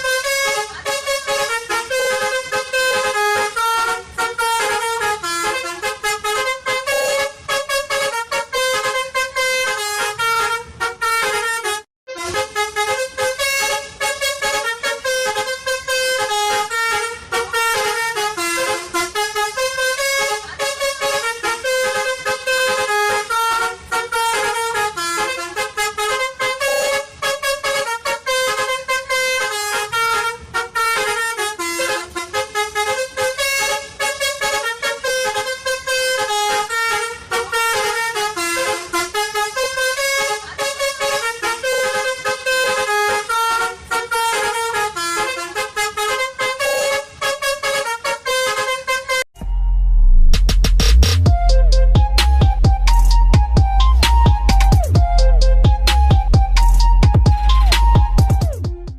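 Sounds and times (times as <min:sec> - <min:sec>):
electronic tune in horn-like tone: 0:00.0 - 0:25.6, 0:46.5 - 0:58.9.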